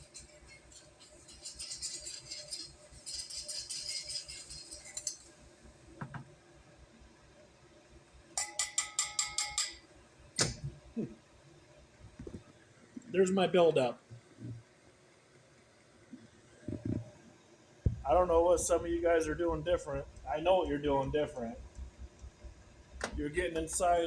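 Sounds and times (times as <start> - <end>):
scratchy scraping of metal: 0.0 - 5.4
ringing metallic clinks: 8.4 - 9.8.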